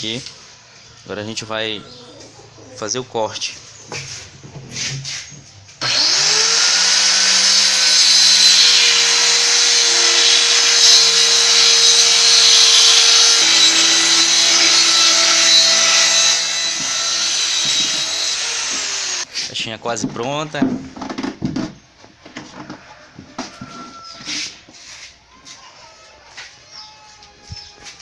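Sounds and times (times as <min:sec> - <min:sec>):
power tool cutting wood: 0:05.8 - 0:19.3.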